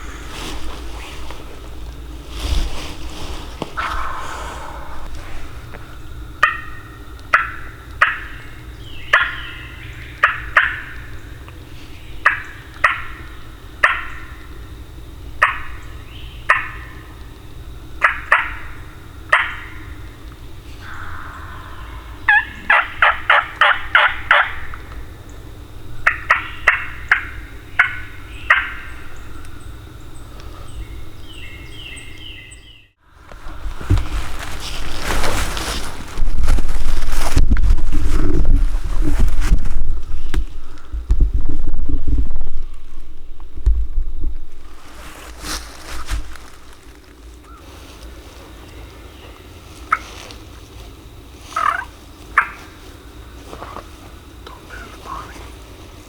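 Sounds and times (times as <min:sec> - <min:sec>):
steady low hum: 0:00.0 - 0:56.0
turkey calls: 0:03.8 - 0:05.1, 0:05.7 - 0:11.3, 0:12.2 - 0:14.5, 0:15.4 - 0:17.1, 0:18.0 - 0:25.0, 0:26.0 - 0:33.3, 0:49.9 - 0:50.2, 0:51.5 - 0:52.8, 0:54.4 - 0:55.5.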